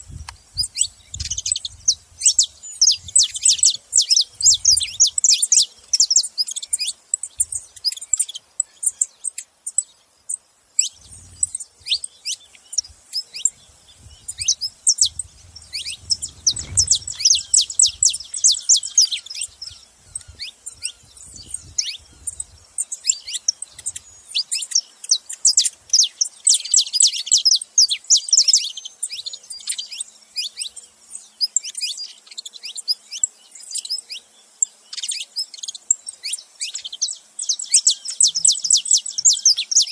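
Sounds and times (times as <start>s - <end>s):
finch calling in high chips: 14.1s - 20.5s.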